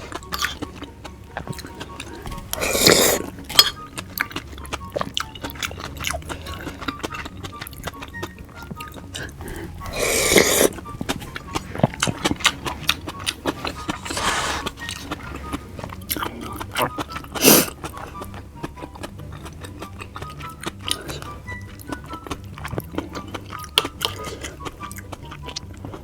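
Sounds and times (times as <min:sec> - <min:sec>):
wet chewing with mouth clicks: 0:00.0 - 0:26.0
loud slurps: 0:01.6 - 0:03.7, 0:09.2 - 0:10.9, 0:12.0 - 0:15.3, 0:16.1 - 0:17.8.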